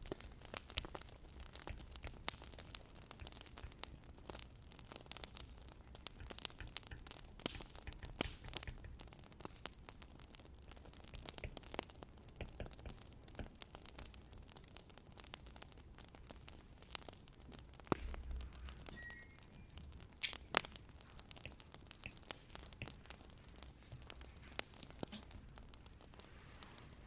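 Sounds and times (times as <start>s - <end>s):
low fire hiss: 0.0s - 27.0s
wood fire crackling: 0.0s - 27.0s.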